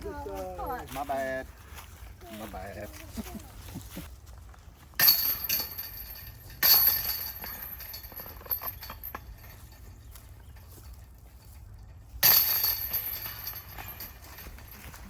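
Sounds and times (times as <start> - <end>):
chains jingling from disc strikes: 5.0 - 10.0, 12.2 - 15.0.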